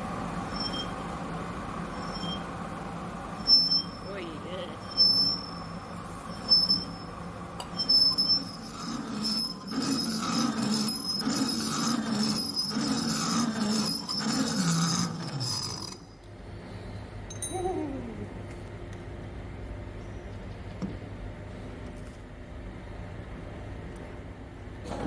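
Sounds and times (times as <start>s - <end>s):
low pulsing machine hum: 0.0s - 25.0s
cutting tool squealing: 7.8s - 16.0s.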